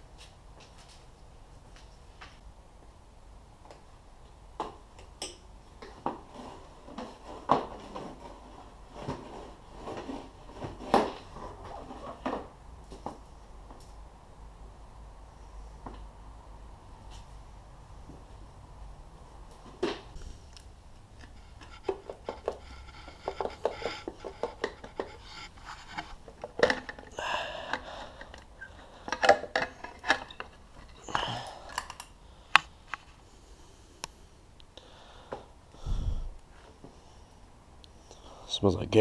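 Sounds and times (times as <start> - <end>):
metal tools clinking and scraping: 28.3 - 31.1.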